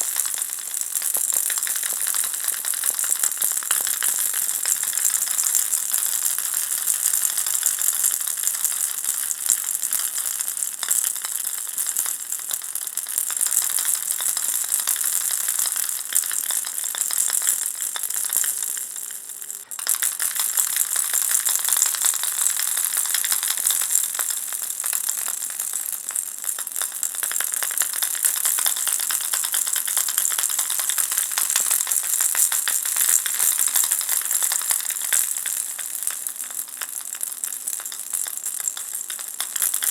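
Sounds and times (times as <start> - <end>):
baby rattle shaken: 13.4 - 26.1.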